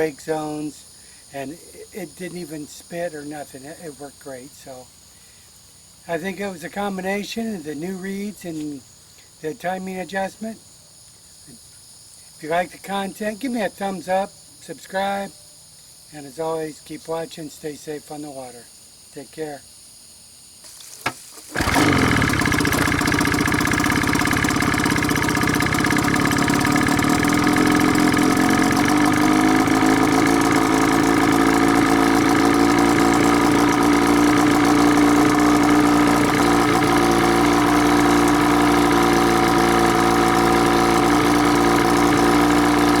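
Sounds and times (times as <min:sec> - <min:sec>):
outboard motor running: 0:21.5 - 0:43.0.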